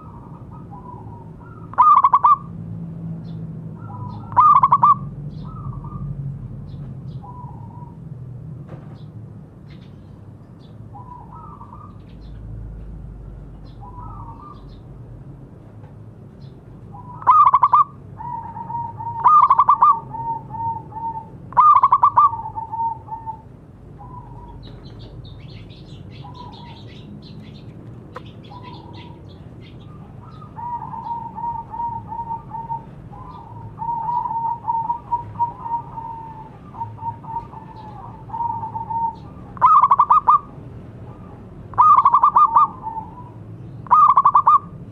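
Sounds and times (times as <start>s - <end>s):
doves cooing: 0.0s - 2.6s, 3.8s - 6.2s, 16.9s - 25.2s, 26.1s - 44.8s.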